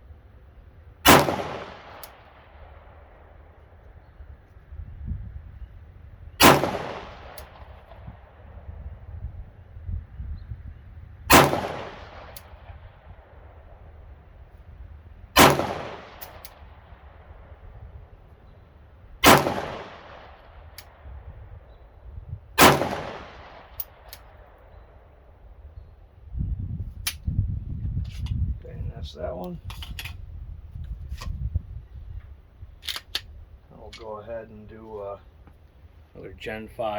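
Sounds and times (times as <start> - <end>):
wind buffeting microphone: 0.8 - 35.6
pistol shots with echo: 1.0 - 3.3, 6.4 - 8.5, 11.3 - 13.6, 15.4 - 17.6, 19.2 - 21.1, 22.6 - 25.0.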